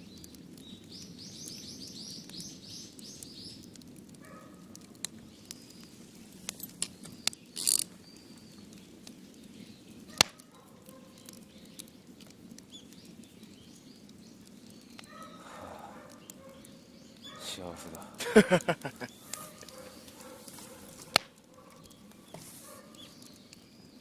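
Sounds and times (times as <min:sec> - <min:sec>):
firewood cracking: 0:00.0 - 0:24.0
bird chirping: 0:12.7 - 0:24.0.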